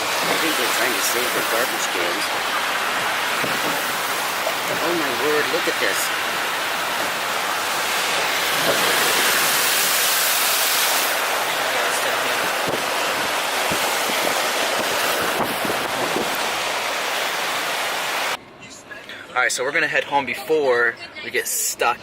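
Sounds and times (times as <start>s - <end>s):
floodwater rushing: 0.0s - 18.4s
wind on microphone: 6.7s - 10.4s, 12.2s - 16.8s.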